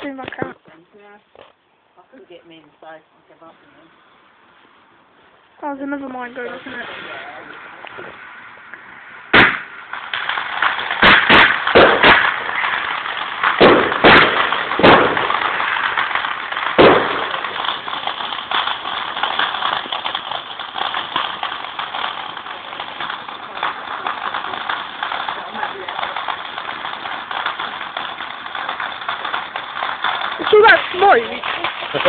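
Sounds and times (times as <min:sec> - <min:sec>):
fireworks bangs: 0:00.0 - 0:01.6, 0:05.6 - 0:32.0
fireworks crackling: 0:00.0 - 0:32.0.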